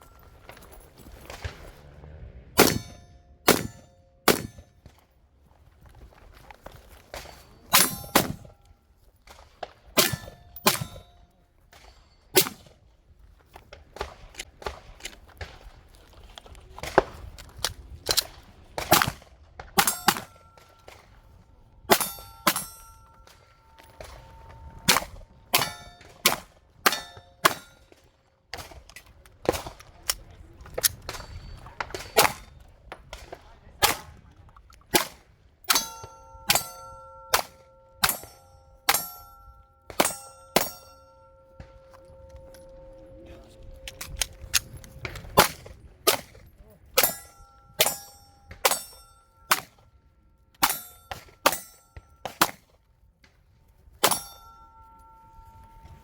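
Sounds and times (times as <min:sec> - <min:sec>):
gunshots: 0:01.1 - 0:04.7, 0:09.3 - 0:11.1, 0:11.8 - 0:12.8, 0:18.0 - 0:21.1, 0:21.9 - 0:30.0, 0:44.0 - 0:49.8
steel targets clanging: 0:02.6 - 0:04.8, 0:07.1 - 0:08.7, 0:10.0 - 0:12.7, 0:19.8 - 0:28.1, 0:35.6 - 0:52.8, 0:53.9 - 0:56.0.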